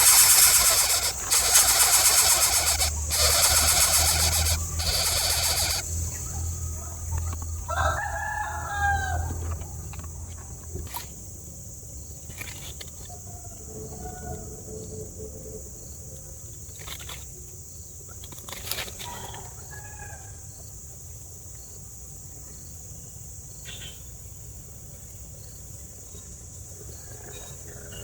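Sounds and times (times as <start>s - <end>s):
high-pitched insect drone: 0.0s - 8.0s
low background rumble: 0.0s - 10.7s.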